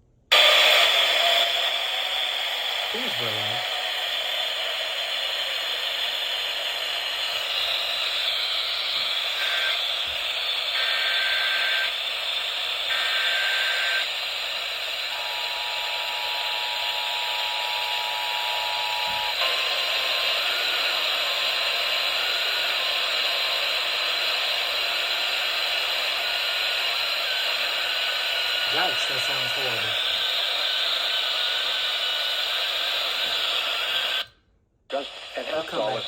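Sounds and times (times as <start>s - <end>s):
radio static hiss: 2.9s - 3.8s, 7.0s - 12.0s, 26.3s - 34.3s, 34.9s - 36.0s
digital header tone bursts: 28.7s - 30.2s.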